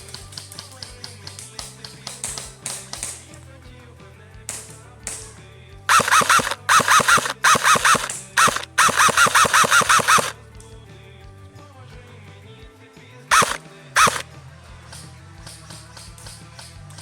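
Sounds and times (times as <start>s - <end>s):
airsoft gun firing bursts: 0.0s - 3.4s, 4.5s - 10.4s, 13.3s - 17.0s.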